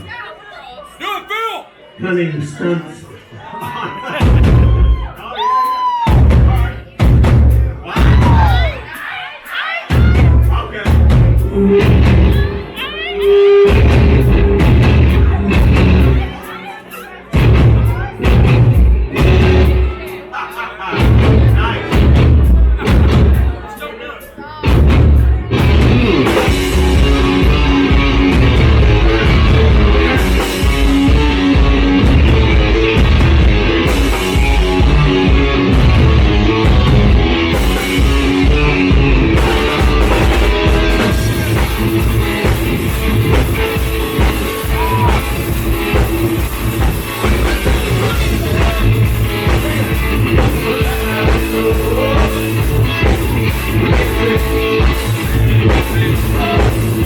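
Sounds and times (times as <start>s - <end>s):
drum kit: 4.0s - 16.6s, 17.3s - 20.2s, 20.9s - 23.6s, 24.6s - 57.0s
electric guitar played loud: 11.1s - 16.5s, 17.4s - 23.5s, 24.7s - 57.0s.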